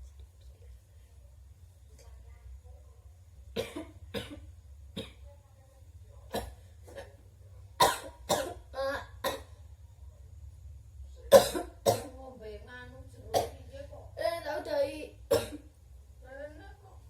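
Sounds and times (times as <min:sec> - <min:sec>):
woman coughing: 0:03.6 - 0:05.2, 0:07.8 - 0:08.6, 0:11.3 - 0:12.2, 0:15.3 - 0:15.7.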